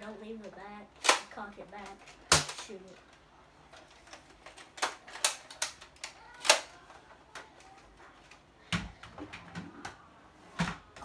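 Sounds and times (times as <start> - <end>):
toy crossbow clicks and snaps: 1.0 - 7.8.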